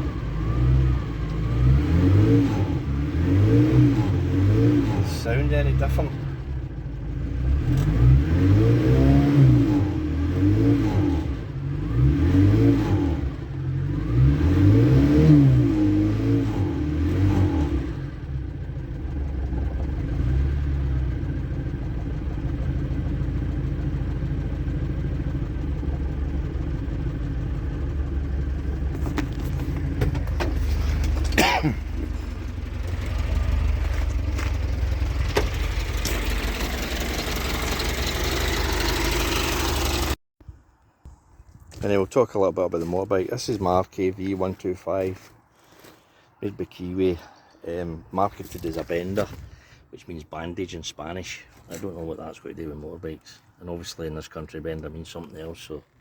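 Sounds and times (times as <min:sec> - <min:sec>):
motorcycle engine revving: 0:00.0 - 0:40.2.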